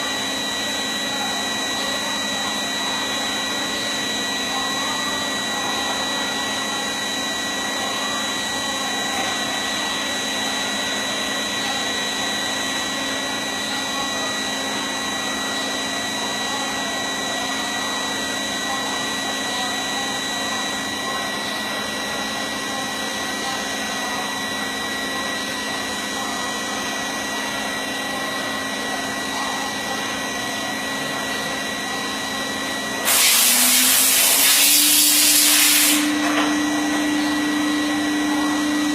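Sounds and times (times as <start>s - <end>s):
cnc machine humming with high whine: 0.0s - 38.9s
loud hiss: 33.1s - 36.1s.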